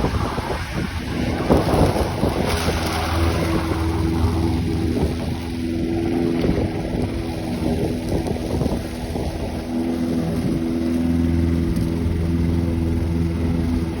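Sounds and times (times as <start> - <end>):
lawnmower engine cutting grass: 0.0 - 14.0.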